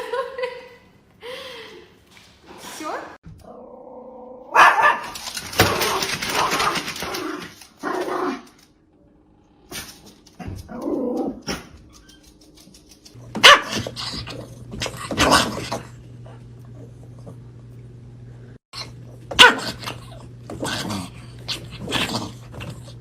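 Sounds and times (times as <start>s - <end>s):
dog barking and growling: 3.4s - 8.6s, 13.2s - 17.3s, 18.8s - 23.0s.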